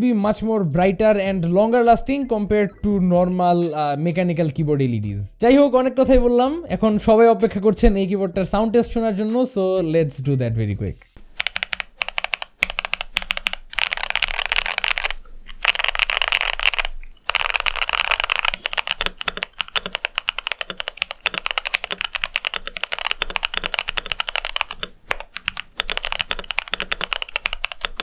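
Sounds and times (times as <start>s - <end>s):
mechanical keyboard typing: 11.2s - 28.0s.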